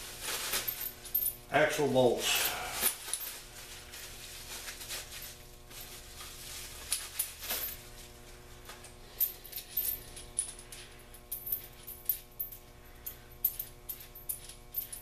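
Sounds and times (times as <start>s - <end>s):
metal hardware clinking: 8.8s - 15.0s.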